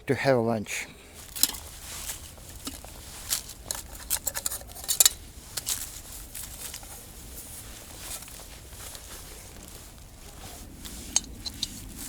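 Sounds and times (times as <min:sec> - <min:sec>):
metal cookware clinking: 0:03.7 - 0:05.2.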